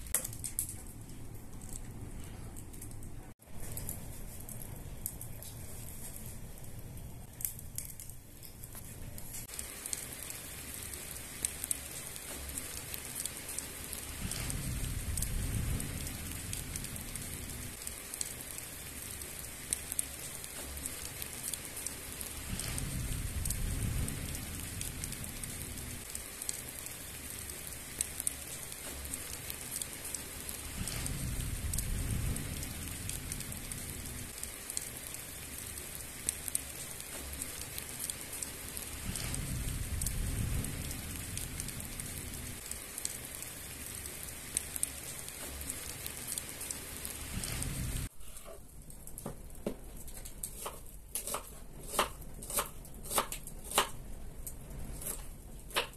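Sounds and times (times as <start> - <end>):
steady rain falling: 0.0 - 55.9
low rumbling: 14.0 - 17.9, 22.2 - 26.4, 30.4 - 34.7, 38.6 - 42.8, 47.1 - 48.1.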